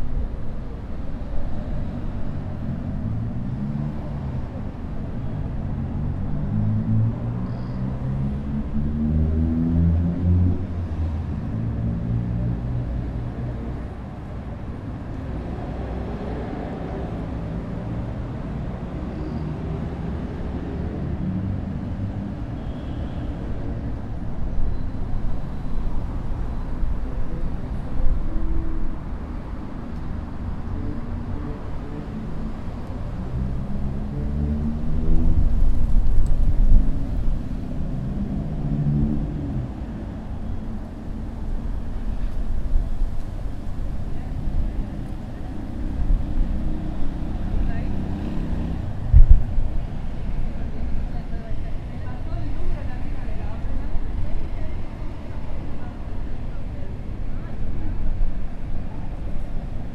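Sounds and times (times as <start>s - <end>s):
low traffic rumble: 0.0s - 59.9s
vehicles passing: 0.0s - 59.9s.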